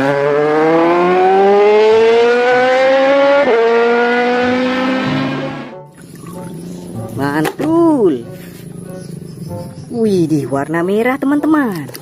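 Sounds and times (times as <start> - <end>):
racing motorbike engine revving: 0.0 - 5.8.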